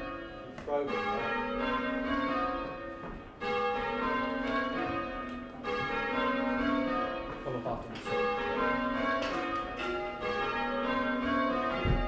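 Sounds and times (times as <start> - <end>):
church bells ringing in rounds: 0.0 - 12.0.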